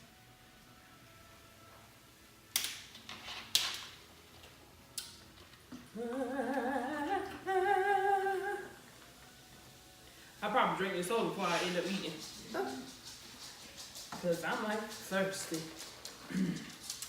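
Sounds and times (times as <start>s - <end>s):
person humming with vibrato: 5.8s - 8.8s.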